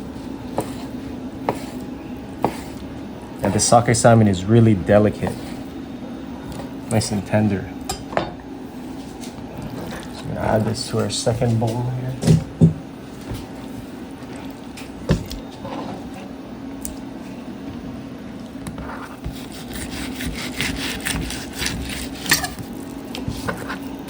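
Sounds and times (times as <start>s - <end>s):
steady low hum: 0.0s - 24.0s
knife cutting on cutting board: 18.8s - 22.6s.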